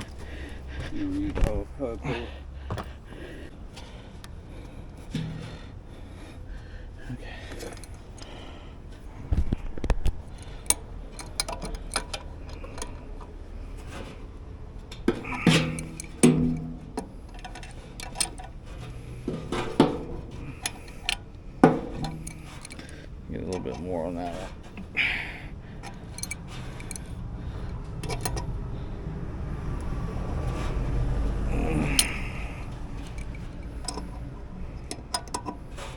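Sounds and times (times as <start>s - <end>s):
hand tools knocking on metal: 15.1s - 18.5s
light metallic clinks: 21.8s - 24.2s, 25.8s - 28.5s.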